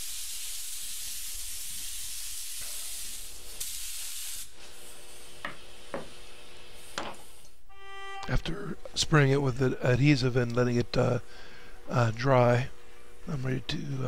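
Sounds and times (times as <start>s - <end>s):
spray adhesive hissing: 0.0s - 5.3s.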